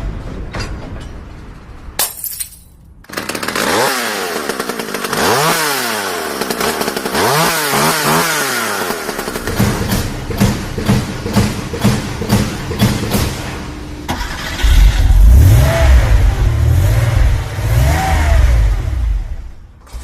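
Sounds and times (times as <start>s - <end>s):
small engine revving: 3.1s - 10.1s, 14.1s - 20.0s.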